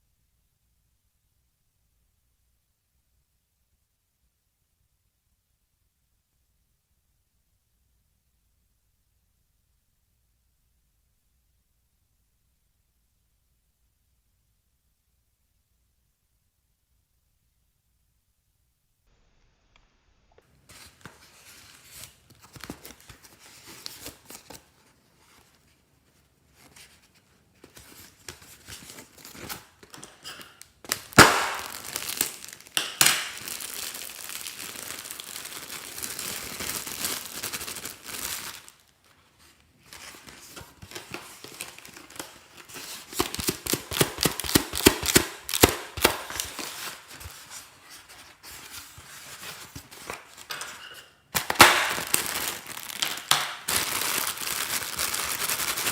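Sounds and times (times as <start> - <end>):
slime crackling: 30.9 - 38.7.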